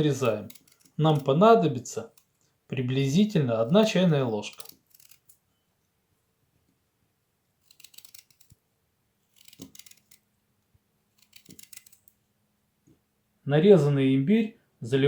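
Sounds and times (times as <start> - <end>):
knife cutting ginger: 0.0 - 1.4, 3.0 - 5.4, 7.6 - 8.6, 9.3 - 10.2, 11.2 - 12.2.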